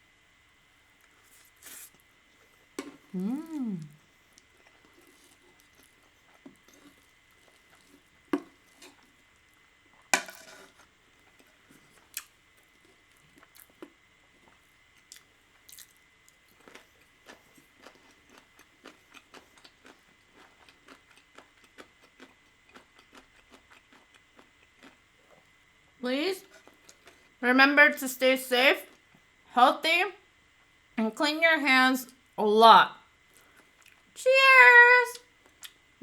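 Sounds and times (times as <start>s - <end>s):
wet chewing mouth sounds: 2.8s - 8.1s, 11.4s - 25.5s.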